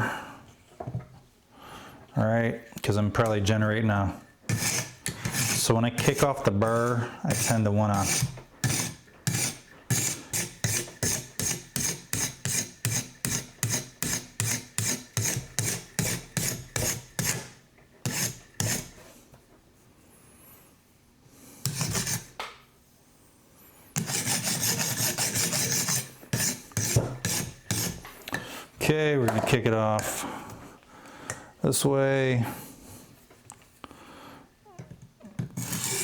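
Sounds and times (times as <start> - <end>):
sharpening stone rasping knife: 4.5 - 19.0, 21.7 - 22.4, 24.0 - 28.0, 35.6 - 36.0.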